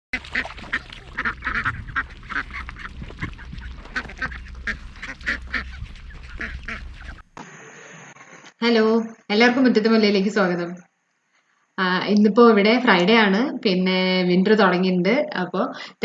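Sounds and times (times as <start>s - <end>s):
low rumble: 0.1s - 7.4s
ducks quacking: 0.1s - 8.4s.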